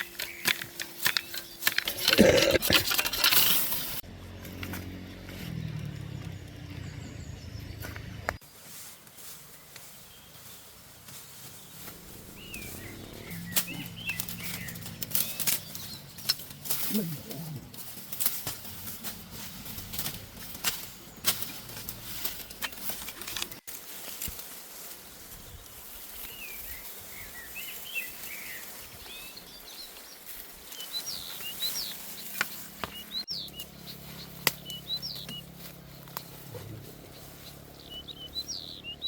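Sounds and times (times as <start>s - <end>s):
small birds chirping: 0.0s - 2.8s, 5.3s - 23.6s, 25.2s - 39.0s
rustling: 8.4s - 38.2s.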